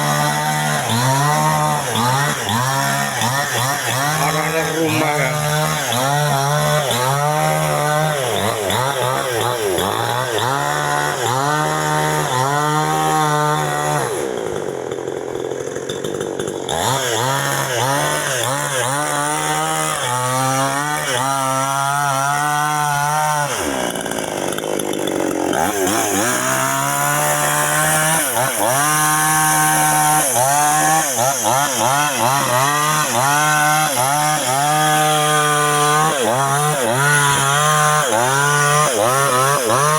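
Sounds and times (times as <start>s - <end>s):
chainsaw cutting through trunk: 0.0s - 39.9s.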